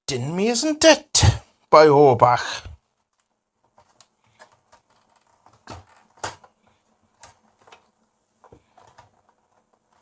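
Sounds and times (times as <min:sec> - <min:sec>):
plastic clips clicking and knocking: 0:03.1 - 0:10.0.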